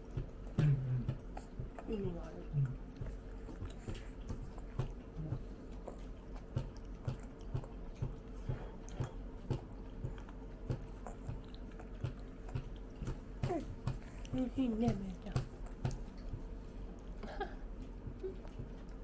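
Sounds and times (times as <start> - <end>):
person chewing food: 0.0 - 14.4, 15.0 - 19.0.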